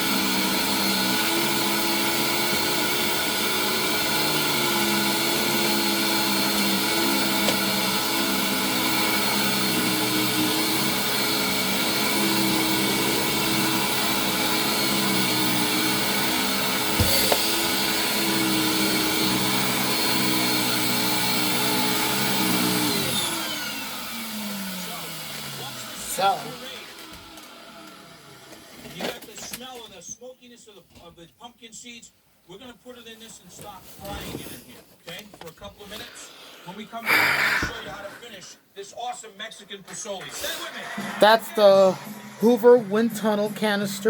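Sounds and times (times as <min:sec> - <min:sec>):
vacuum motor winding down: 0:00.0 - 0:29.1, 0:40.4 - 0:44.0
vacuum cleaner running: 0:00.0 - 0:29.2, 0:39.9 - 0:44.0.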